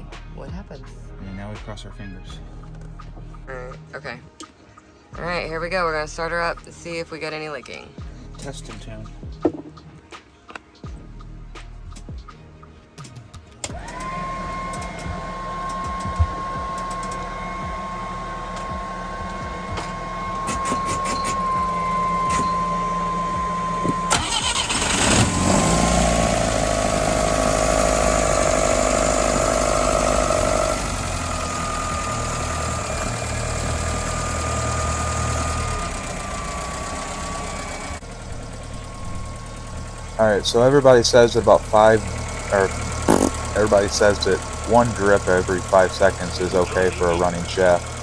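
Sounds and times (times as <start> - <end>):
boat engine cranking and running: 13.6 - 48.0
steady high tone: 13.8 - 48.0.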